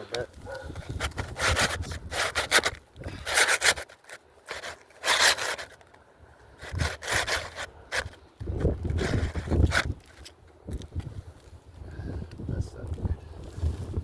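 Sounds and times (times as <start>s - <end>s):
shingle scraping against shingles: 0.0s - 11.1s.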